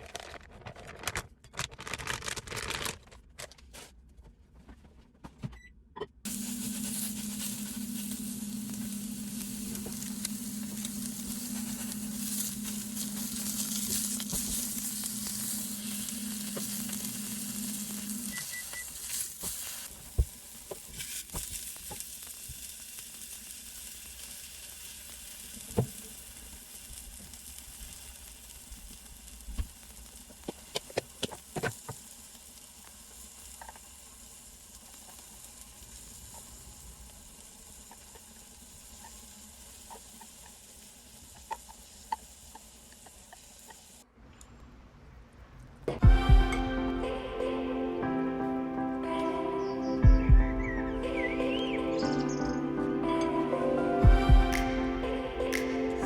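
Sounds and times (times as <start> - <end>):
steady low hum: 6.2 - 18.6
food sizzling in a frying pan: 6.3 - 44.0.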